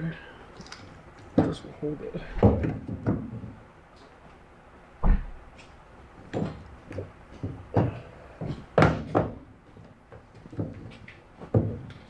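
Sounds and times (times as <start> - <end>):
sheet metal knocks and clunks: 1.4 - 3.6, 6.3 - 9.5, 10.3 - 12.0.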